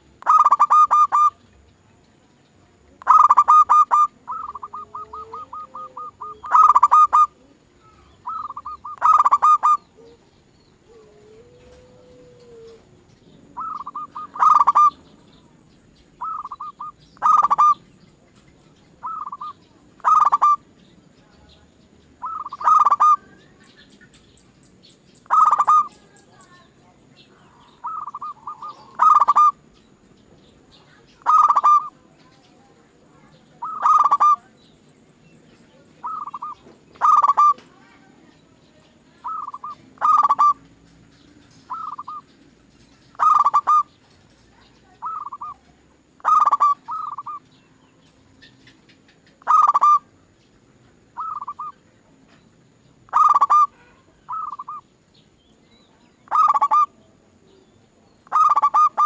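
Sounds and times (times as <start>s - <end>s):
dove cooing: 0.0s - 1.4s, 3.0s - 15.5s, 16.2s - 17.8s, 18.9s - 20.6s, 22.2s - 23.4s, 25.2s - 26.6s, 27.4s - 29.7s, 31.2s - 32.5s, 33.2s - 34.6s, 35.8s - 38.0s, 39.2s - 40.7s, 41.4s - 42.3s, 43.0s - 47.4s, 49.3s - 50.1s, 51.2s - 51.8s, 53.1s - 54.8s, 56.2s - 57.0s, 58.2s - 59.0s.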